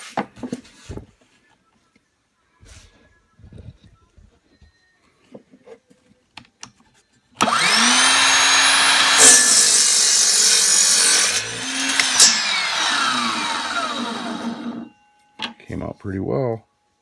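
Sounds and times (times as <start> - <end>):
miter saw motor whine: 7.4 - 14.9
saw blade cutting wood: 7.4 - 14.9.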